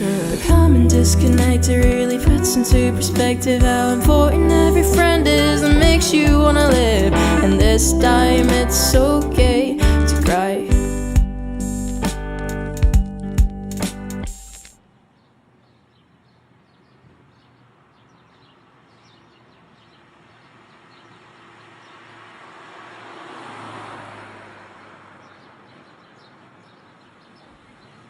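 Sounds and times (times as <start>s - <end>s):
distant vehicle passing: 17.4s - 28.0s.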